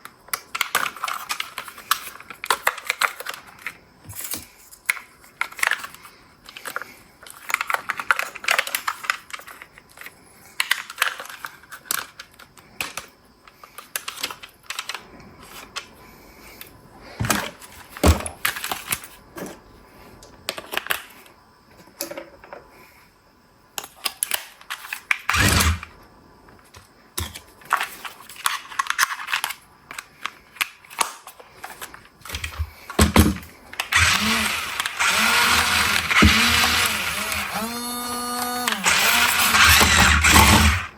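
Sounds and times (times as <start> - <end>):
toy parts clicking: 24.0 - 25.9, 33.8 - 40.9
small electric motor whirring: 25.3 - 25.8, 33.9 - 40.9.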